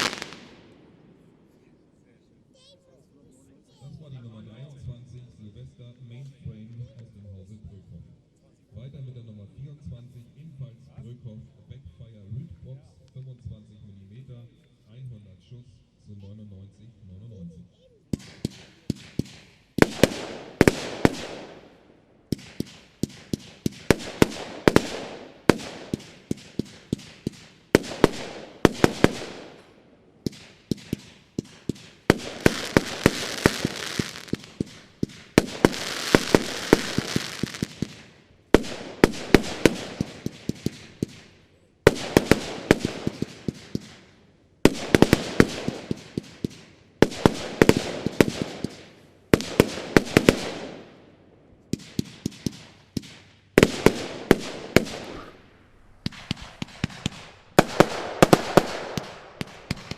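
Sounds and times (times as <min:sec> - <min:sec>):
firework bangs and crackling: 0:00.0 - 0:01.3, 0:18.1 - 0:51.0, 0:51.7 - 0:59.9.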